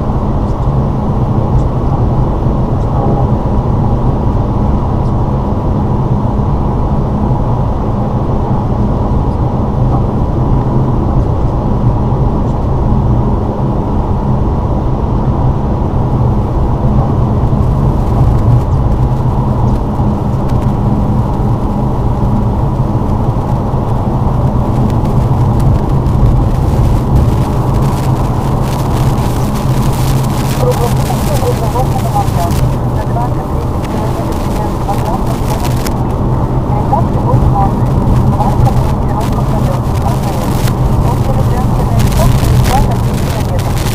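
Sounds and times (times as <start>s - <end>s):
car engine and road noise: 0.0s - 43.9s
faint crackling: 17.4s - 43.9s.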